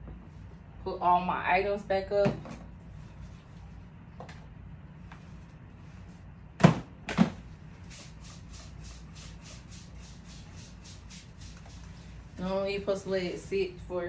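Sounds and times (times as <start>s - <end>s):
spray bottle hissing: 7.9s - 12.0s.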